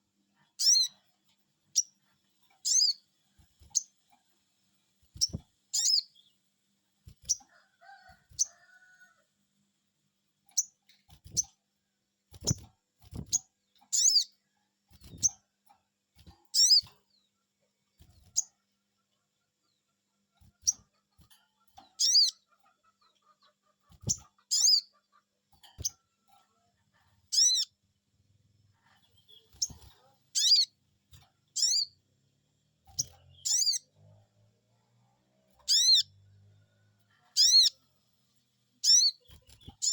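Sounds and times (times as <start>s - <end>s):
bird chirping call: 0.6s - 1.0s, 2.6s - 3.0s, 5.1s - 6.3s, 12.4s - 14.3s, 16.5s - 16.9s, 21.8s - 25.0s, 27.3s - 27.8s, 29.1s - 30.8s, 31.5s - 32.0s, 32.9s - 34.1s, 35.6s - 36.3s, 37.3s - 37.8s, 38.8s - 39.9s.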